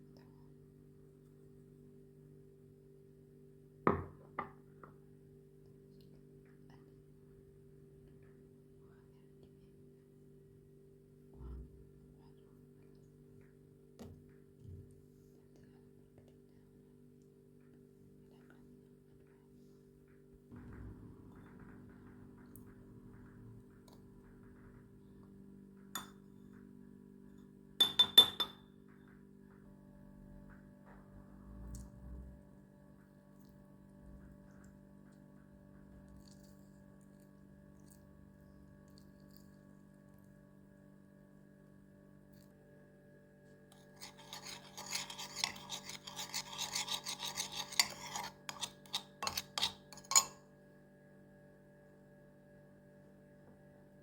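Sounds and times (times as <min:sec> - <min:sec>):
spoon clinking on glass dish: 0:26.0 - 0:26.2, 0:27.8 - 0:28.7, 0:44.0 - 0:50.4
sharp scrapes: 0:43.8 - 0:50.4
rasping rubbing strokes: 0:44.0 - 0:50.3.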